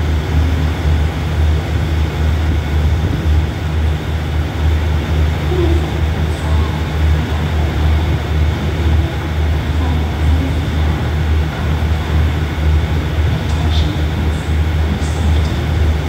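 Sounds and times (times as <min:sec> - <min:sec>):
train low rumble: 0:00.0 - 0:16.0.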